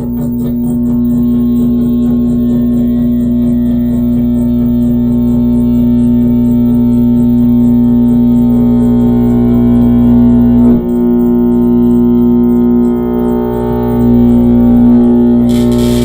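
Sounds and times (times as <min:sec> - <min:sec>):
loud electronic drone: 0:13.4 - 0:16.0.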